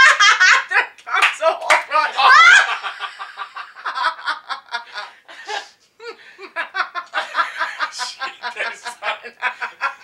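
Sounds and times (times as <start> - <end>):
person snickering laughter: 7.0 - 10.0.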